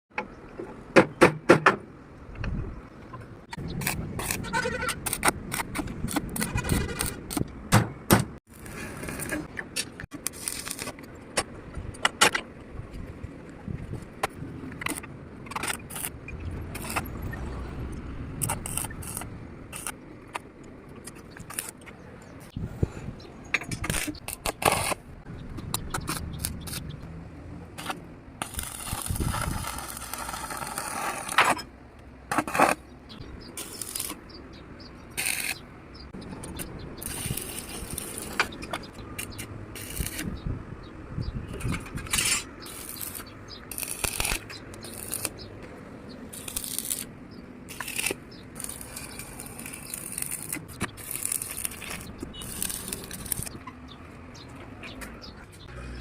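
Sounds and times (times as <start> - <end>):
steel pieces clanking and scraping: 23.4 - 25.0, 27.8 - 32.8, 41.5 - 45.4, 47.7 - 53.6.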